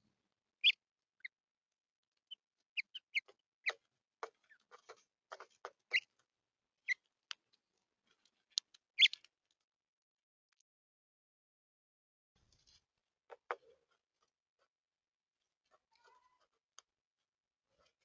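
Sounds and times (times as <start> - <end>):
small songbirds chirping: 2.2 - 6.2, 8.4 - 9.3.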